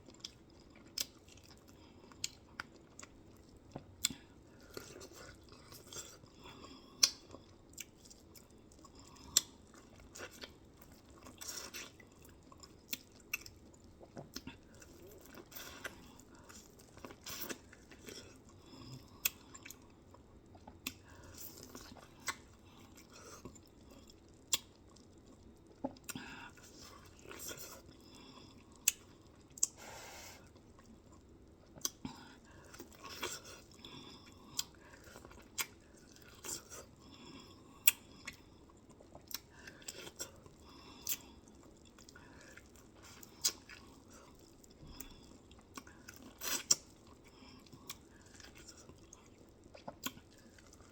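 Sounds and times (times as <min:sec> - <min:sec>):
chewing with crunches: 0:00.0 - 0:50.9.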